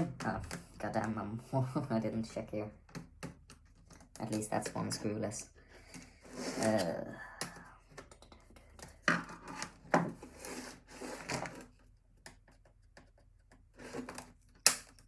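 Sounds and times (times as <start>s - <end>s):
plastic casing scraping and rubbing: 5.7s - 7.1s, 7.9s - 15.0s.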